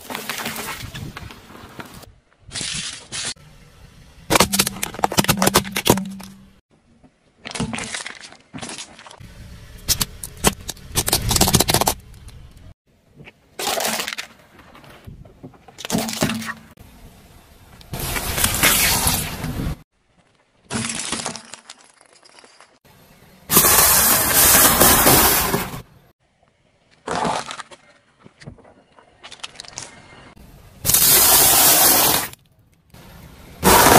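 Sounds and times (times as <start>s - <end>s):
objects crunching under car tyre: 7.4s - 16.8s, 26.9s - 30.3s.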